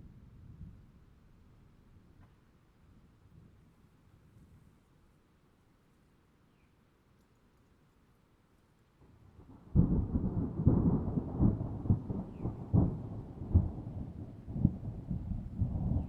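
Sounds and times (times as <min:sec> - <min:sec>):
rolling thunder rumble: 0:09.3 - 0:16.0
thunderclap: 0:09.4 - 0:16.0.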